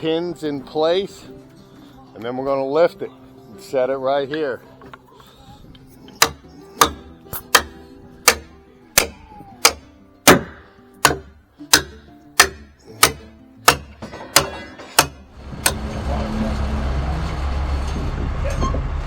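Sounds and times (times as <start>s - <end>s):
hammer blows on timber: 6.1s - 15.9s.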